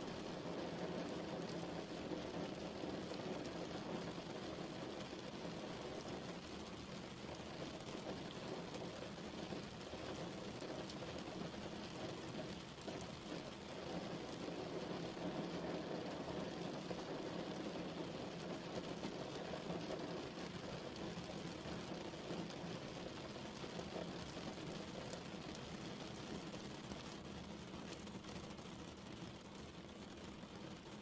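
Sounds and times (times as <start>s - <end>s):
steady rain falling: 0.0s - 31.0s.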